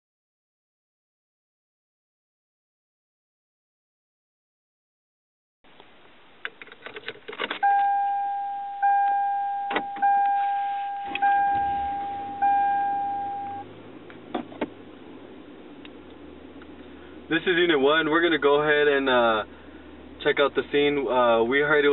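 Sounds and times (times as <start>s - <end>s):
car warning chime: 7.6s - 13.7s
low engine hum: 7.6s - 21.9s.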